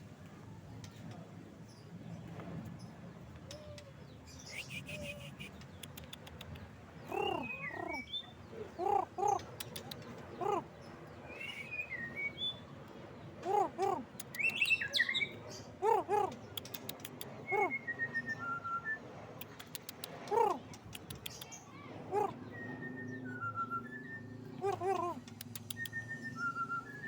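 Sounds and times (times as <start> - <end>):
songbird calling: 3.4 - 12.7, 13.4 - 18.4, 19.5 - 27.0
down-gliding bird whistles: 11.2 - 12.7, 17.4 - 19.2, 22.2 - 27.0.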